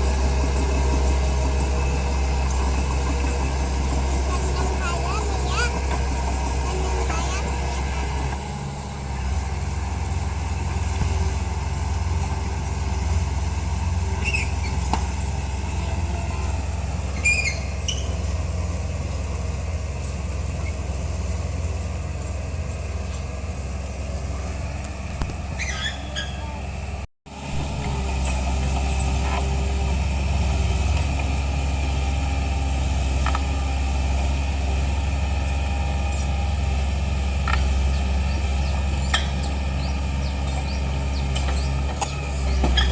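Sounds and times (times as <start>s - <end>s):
bulldozer diesel engine running: 0.0s - 42.9s
short high squeaks: 17.1s - 18.4s, 25.3s - 26.7s.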